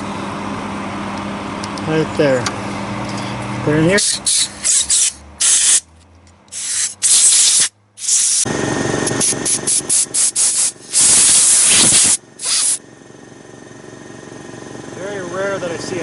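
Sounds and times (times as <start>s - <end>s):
pressurized spray hissing: 6.6s - 8.4s, 9.2s - 12.8s.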